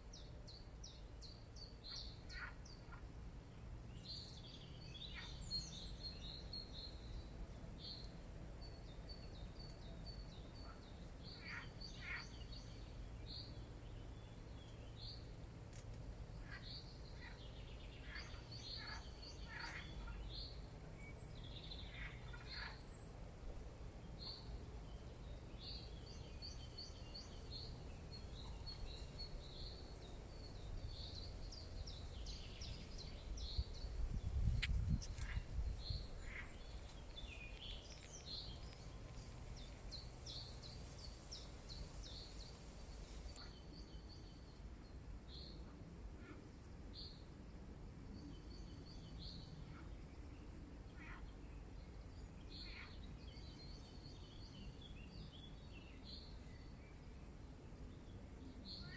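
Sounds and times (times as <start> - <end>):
small birds chirping: 3.8 - 23.2, 24.0 - 44.4.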